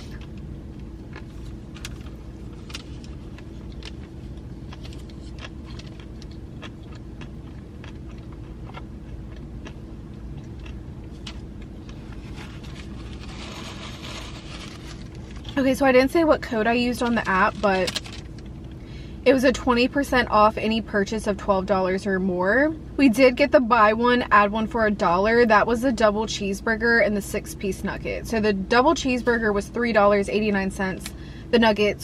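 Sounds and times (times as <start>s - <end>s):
soft rustle: 11.9s - 15.6s.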